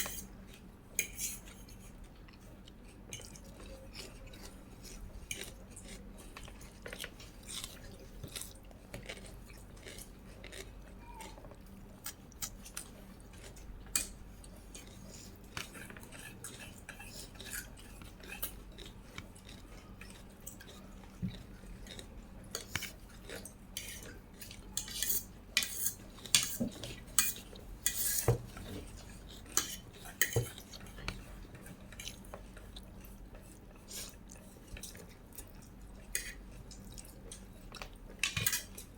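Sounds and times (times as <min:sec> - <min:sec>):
utensils scraping a dish: 0:24.8 - 0:30.6.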